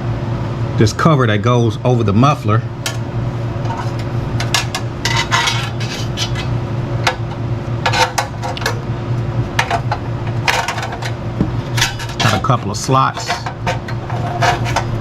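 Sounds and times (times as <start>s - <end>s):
steady low hum: 0.0s - 15.0s
metal cover clinking and knocking: 2.8s - 8.8s, 9.6s - 15.0s.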